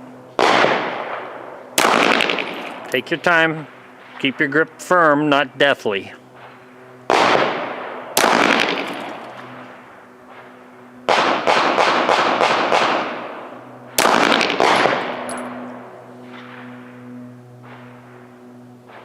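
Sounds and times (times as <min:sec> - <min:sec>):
pistol shots: 0:00.4 - 0:02.9, 0:06.4 - 0:09.2, 0:10.3 - 0:15.5.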